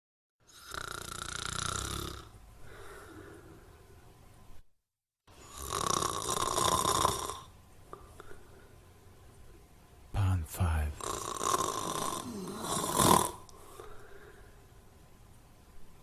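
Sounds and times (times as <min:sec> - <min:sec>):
loud snoring: 0:00.5 - 0:02.3, 0:05.4 - 0:07.5, 0:11.0 - 0:13.4
quiet breathing: 0:02.5 - 0:04.1, 0:07.9 - 0:09.6, 0:13.5 - 0:14.9.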